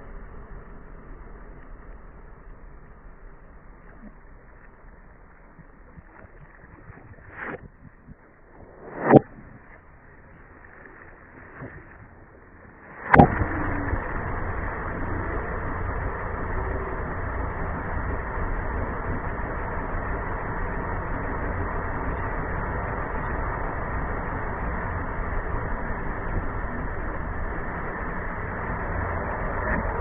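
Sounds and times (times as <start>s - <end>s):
car rumble: 0.0s - 30.0s.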